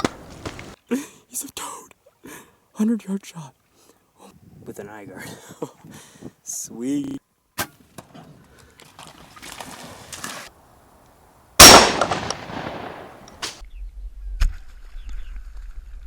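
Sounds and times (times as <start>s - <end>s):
wind rumble on microphone: 4.4s - 6.3s, 13.6s - 16.0s
loud gunshot: 11.6s - 13.6s.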